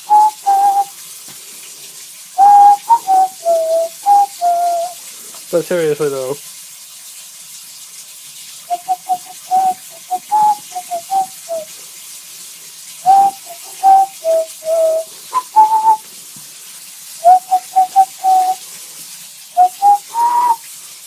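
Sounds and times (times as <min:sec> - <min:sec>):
person whistling a tune: 0:00.0 - 0:00.9, 0:02.4 - 0:05.0, 0:08.7 - 0:11.7, 0:13.0 - 0:16.0, 0:17.2 - 0:18.6, 0:19.6 - 0:20.6.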